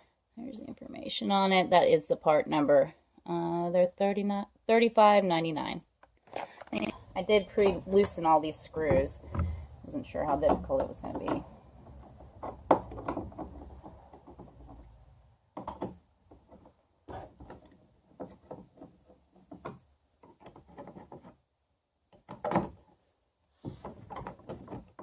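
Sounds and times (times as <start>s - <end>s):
knocks clicks and rubbing: 7.2s - 21.4s, 22.1s - 23.0s, 23.6s - 25.0s.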